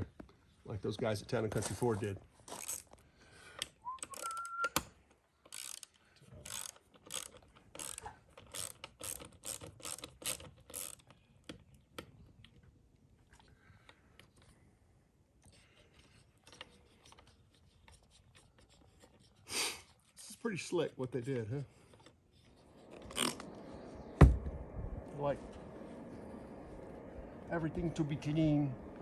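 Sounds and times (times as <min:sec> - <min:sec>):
high squeak: 0:04.0 - 0:04.8
ratchet wrench clicking: 0:05.4 - 0:11.1.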